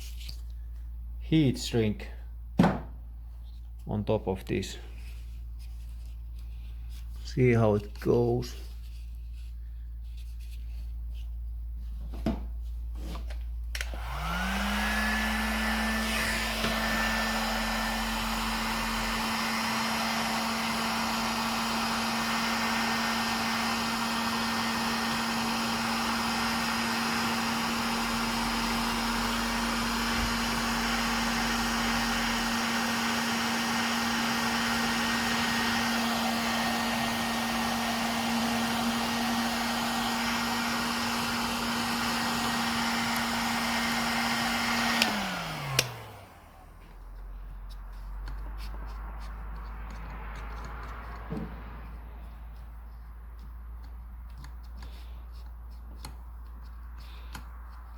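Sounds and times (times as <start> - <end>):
heat gun fan whining: 13.2 - 57.9.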